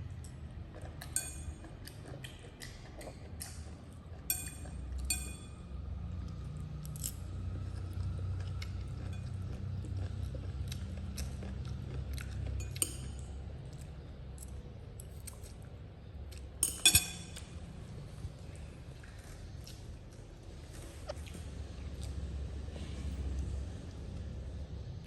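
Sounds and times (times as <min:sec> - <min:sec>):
steady low hum: 0:00.0 - 0:25.0
monkey eating with sharp clicks: 0:00.1 - 0:05.6, 0:06.2 - 0:17.6.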